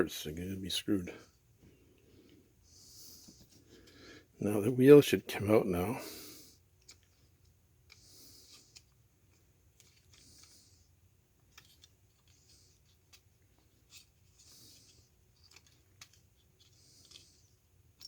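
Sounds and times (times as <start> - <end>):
soft breaths: 0.1 - 18.0
plastic parts clicking: 15.3 - 17.3.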